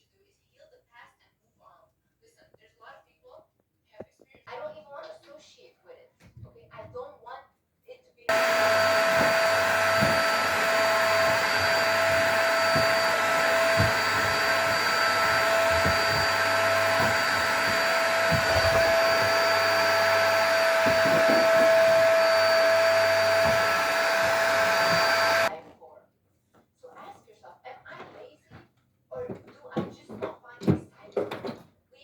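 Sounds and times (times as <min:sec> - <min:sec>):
low bumps: 0:08.3 - 0:25.5
vacuum cleaner running: 0:08.3 - 0:25.5.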